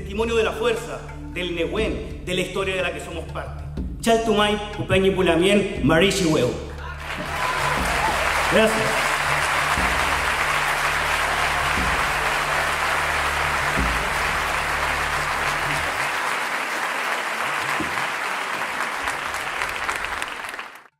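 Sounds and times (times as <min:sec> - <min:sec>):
audience applauding: 0:07.0 - 0:20.9.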